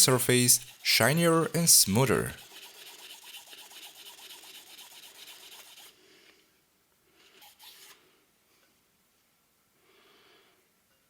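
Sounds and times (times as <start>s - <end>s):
sandpaper rubbing on metal: 0.6s - 0.9s, 2.4s - 6.0s, 7.4s - 7.9s.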